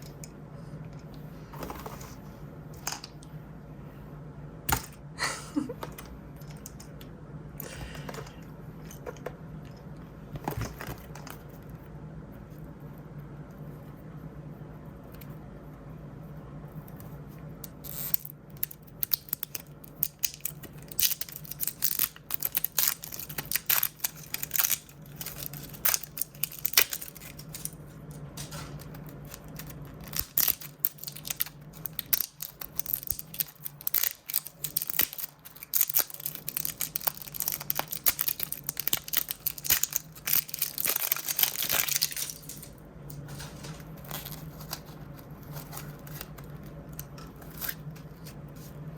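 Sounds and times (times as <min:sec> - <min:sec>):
plastic packaging tearing and crinkling: 0:17.7 - 0:48.4.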